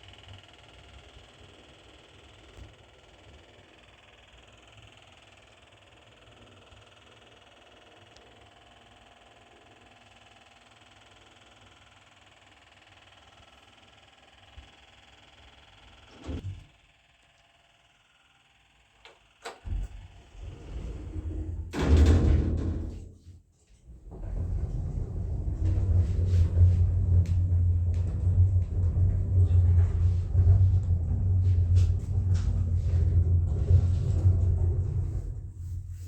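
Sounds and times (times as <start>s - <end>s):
lift doors sliding: 19.6s - 36.0s
lift travelling rumble: 19.7s - 36.0s.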